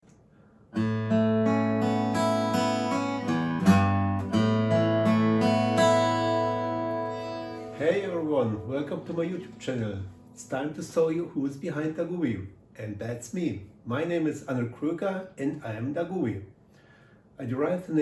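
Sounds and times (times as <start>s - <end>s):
acoustic guitar chords: 0.7s - 11.4s.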